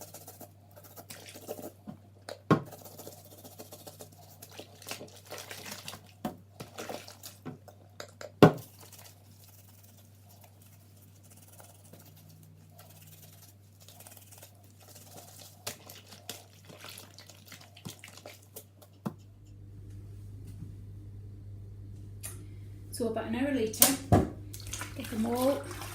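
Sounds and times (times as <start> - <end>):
wet cloths squelching in water: 4.5 - 7.8, 14.6 - 18.9, 24.5 - 25.9
steady low hum: 18.3 - 25.9.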